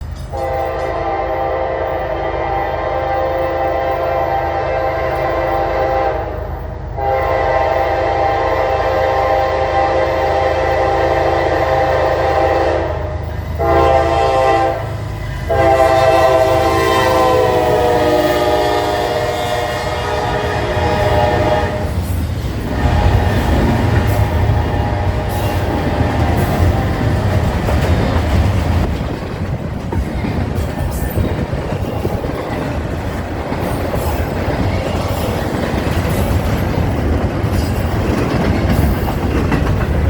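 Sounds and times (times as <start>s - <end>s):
low rumble of moving train: 0.0s - 40.0s
locomotive air horn blasts: 0.4s - 22.0s, 22.7s - 27.2s.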